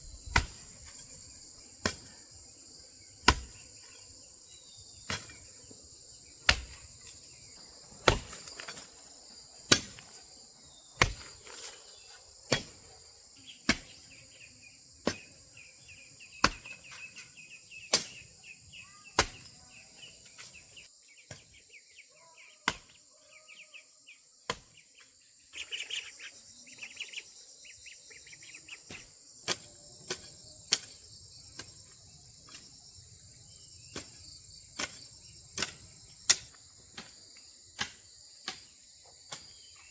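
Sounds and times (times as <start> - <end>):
insects droning: 0.0 - 39.9
bird chirps: 13.0 - 32.2, 39.4 - 39.9.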